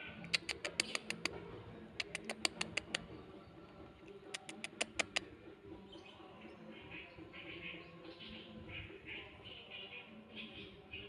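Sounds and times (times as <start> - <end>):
quick runs of sharp clicks: 0.3 - 1.4, 2.0 - 3.1, 4.3 - 5.3.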